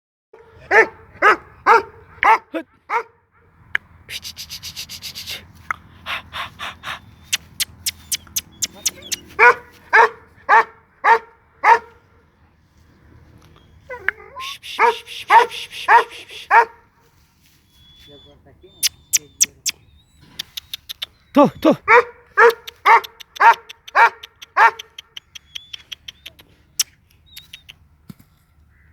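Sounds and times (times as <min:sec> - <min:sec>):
dog barking: 0:00.4 - 0:03.5, 0:07.3 - 0:12.0, 0:14.8 - 0:16.9, 0:21.8 - 0:25.0
sharp clicks: 0:07.3 - 0:09.3, 0:18.8 - 0:21.2, 0:22.5 - 0:27.8
short clicks: 0:07.3 - 0:09.3, 0:18.8 - 0:21.2.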